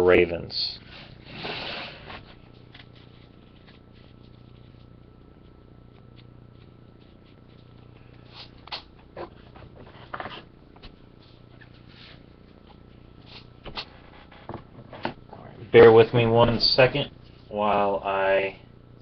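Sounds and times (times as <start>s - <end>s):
faint steady hum: 0.0s - 19.0s
trading cards rustling on table: 2.2s - 12.3s.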